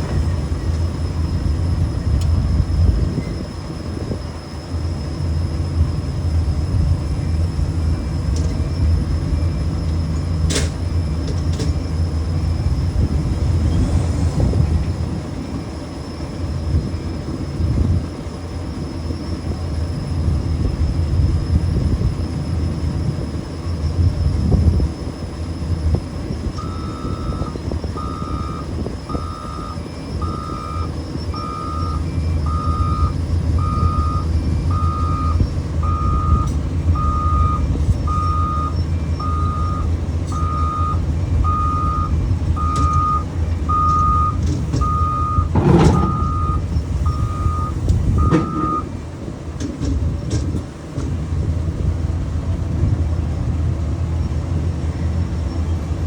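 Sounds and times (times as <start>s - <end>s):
diesel engine hum: 0.0s - 56.0s
backup alarm beeping: 26.5s - 49.0s.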